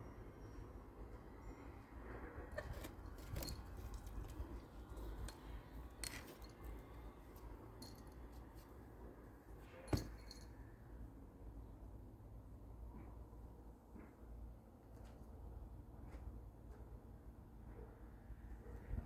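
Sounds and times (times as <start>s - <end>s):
small jingling rattles: 2.6s - 8.8s, 9.6s - 10.7s.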